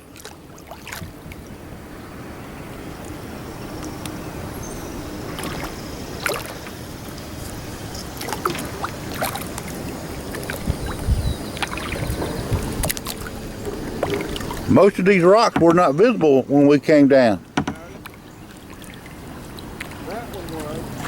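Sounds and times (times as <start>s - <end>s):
paddle splashes and knocks: 0.0s - 1.6s, 5.2s - 21.0s
river water washing: 0.0s - 21.0s
dull low thumps: 10.6s - 16.3s.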